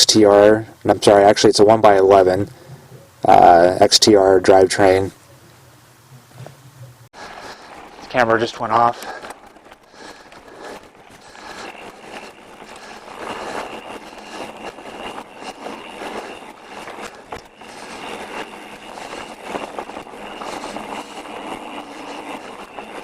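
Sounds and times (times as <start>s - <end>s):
bike clicks and rattles: 6.1s - 23.0s
bike tyres rushing on dirt: 6.4s - 23.0s.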